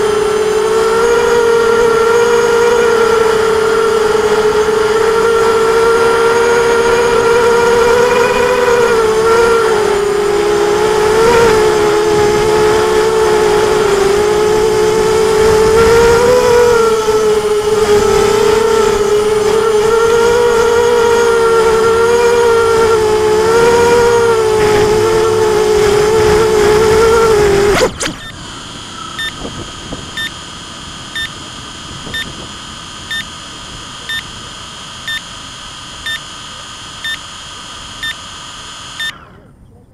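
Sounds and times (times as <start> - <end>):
quadcopter motors whining: 0.0 - 39.9
high electronic tone: 0.9 - 39.6
short electronic beeps: 27.8 - 28.4, 29.0 - 29.5, 30.1 - 30.4, 31.1 - 31.4, 32.1 - 32.4, 33.1 - 33.3, 34.0 - 34.4, 35.0 - 35.3, 36.0 - 36.3, 37.0 - 37.3, 38.0 - 39.5.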